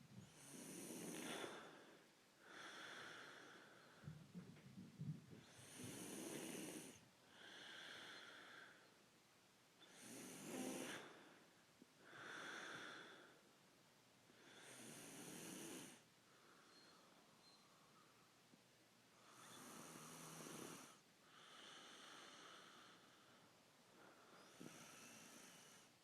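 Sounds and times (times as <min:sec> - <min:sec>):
man snoring: 0:00.3 - 0:01.7, 0:05.5 - 0:08.4, 0:09.8 - 0:11.2, 0:14.4 - 0:16.0, 0:19.2 - 0:23.0, 0:24.4 - 0:25.9
whistling breath: 0:16.4 - 0:18.3, 0:24.2 - 0:24.7.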